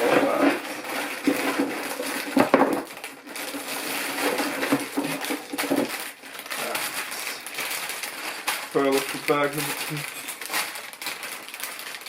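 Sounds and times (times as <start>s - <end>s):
plastic toy bricks rattling in bags: 0.0s - 12.0s.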